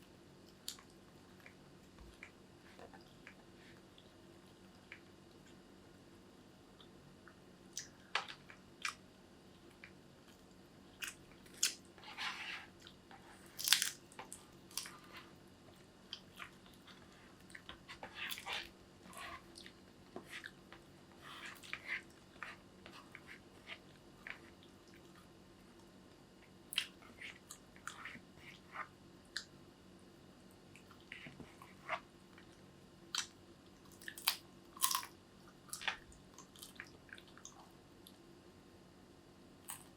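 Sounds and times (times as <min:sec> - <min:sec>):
chewing crunchy food: 0:09.6 - 0:25.3, 0:30.7 - 0:38.2.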